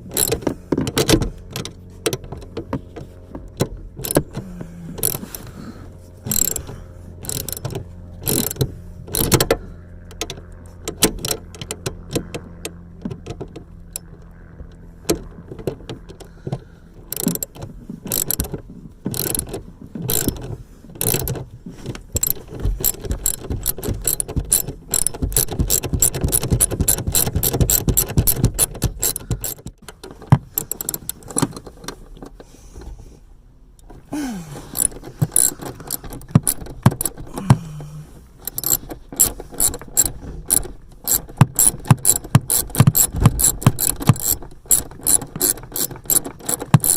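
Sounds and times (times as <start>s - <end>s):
ratchet wrench clicking: 4.0s - 5.5s, 6.3s - 9.6s, 17.1s - 18.5s, 19.1s - 21.4s, 22.2s - 29.7s, 30.5s - 31.5s, 34.8s - 37.5s, 38.4s - 46.9s.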